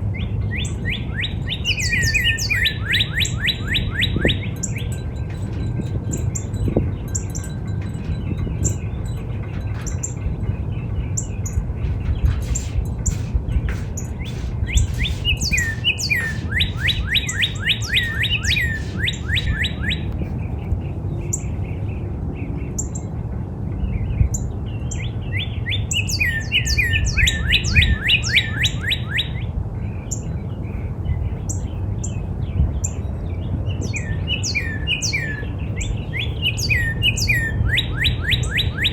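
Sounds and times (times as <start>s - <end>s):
high thin bird chips: 11.2s - 20.1s.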